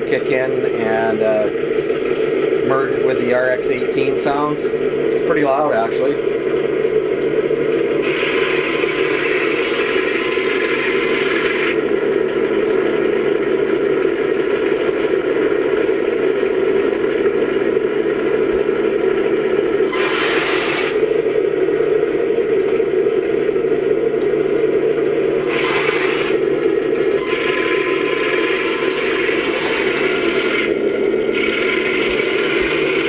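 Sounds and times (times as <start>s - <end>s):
simulated tank engine from speaker: 0.0s - 6.6s, 7.3s - 33.0s
hissing bursts: 19.9s - 21.1s, 25.4s - 26.4s.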